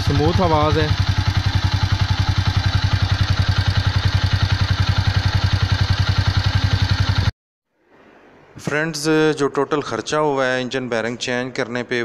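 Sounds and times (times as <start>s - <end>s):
motorcycle engine running: 0.0s - 7.3s.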